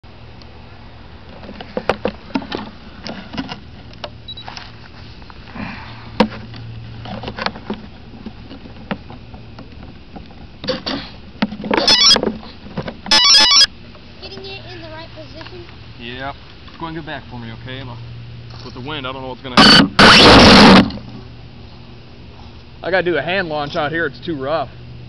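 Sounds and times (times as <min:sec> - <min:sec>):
loud distorted crackles: 0:19.6 - 0:21.0.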